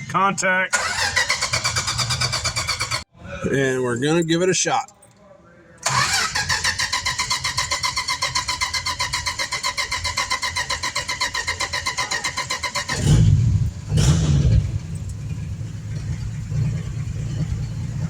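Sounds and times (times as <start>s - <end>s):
starter cranking engine: 0.7s - 3.1s, 5.8s - 18.0s
car engine revving and idling: 5.8s - 18.0s.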